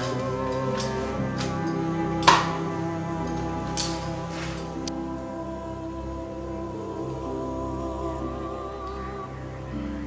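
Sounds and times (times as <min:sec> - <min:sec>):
soft slow background music: 0:00.0 - 0:10.0.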